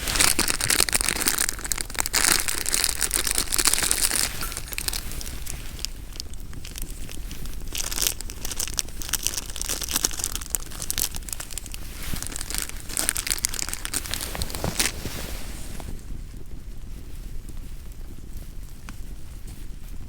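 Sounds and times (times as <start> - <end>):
crinkling and crackling: 0.0 - 20.0.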